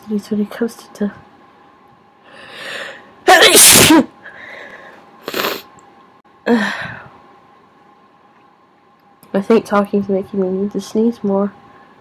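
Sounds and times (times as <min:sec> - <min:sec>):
person sneezing: 0:03.3 - 0:04.1, 0:05.2 - 0:05.7.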